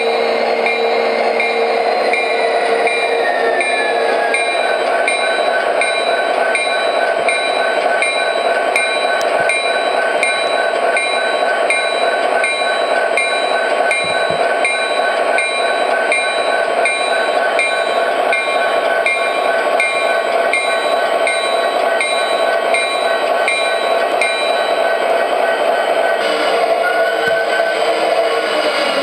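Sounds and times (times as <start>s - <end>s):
model locomotive horns chord: 0.0s - 4.4s
model locomotive running noise: 0.0s - 29.0s.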